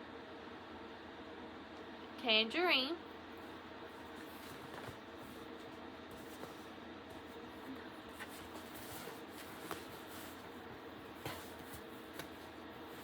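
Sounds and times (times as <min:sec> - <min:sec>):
soft clicks and rustles: 0:03.4 - 0:13.0.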